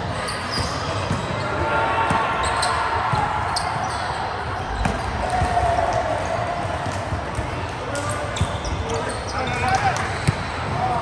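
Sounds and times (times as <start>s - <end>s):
sneaker squeaks: 0.0s - 5.6s, 7.9s - 11.0s
murmur of voices: 0.0s - 11.0s.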